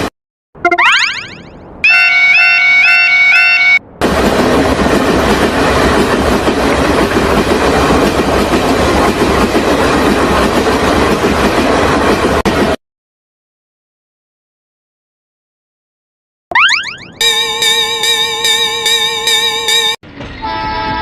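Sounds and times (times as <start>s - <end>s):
train wheels running on rails: 3.9s - 12.8s, 17.2s - 21.0s.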